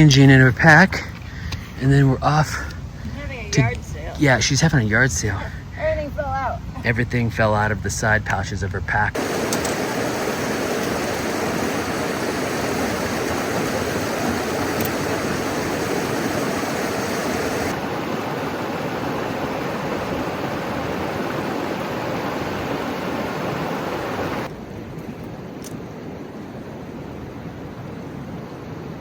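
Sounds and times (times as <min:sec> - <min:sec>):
fast-flowing water rushing: 0:09.2 - 0:24.5.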